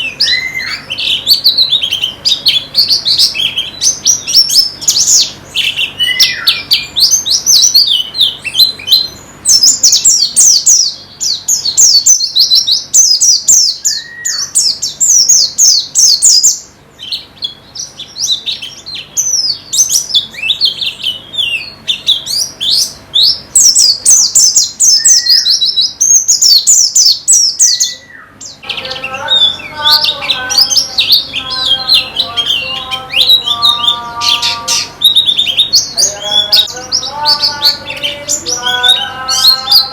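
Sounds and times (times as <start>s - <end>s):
birds twittering: 0.0s - 39.9s
low repeated bird notes: 0.0s - 39.9s.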